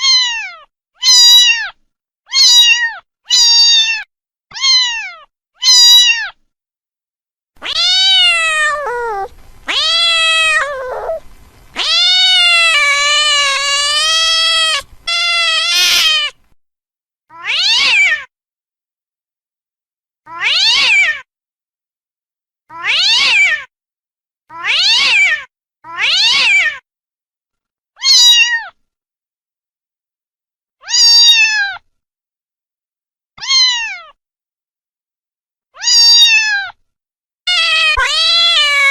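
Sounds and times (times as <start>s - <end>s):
cat meowing: 0.0s - 1.7s, 2.3s - 4.0s, 4.6s - 6.3s, 7.6s - 16.4s, 17.3s - 18.1s, 20.3s - 21.0s, 22.7s - 23.5s, 24.5s - 25.2s, 35.8s - 36.6s, 37.5s - 38.9s.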